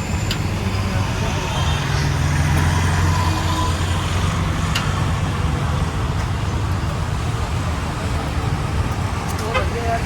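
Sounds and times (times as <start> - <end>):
street traffic engine hum: 0.0 - 10.0.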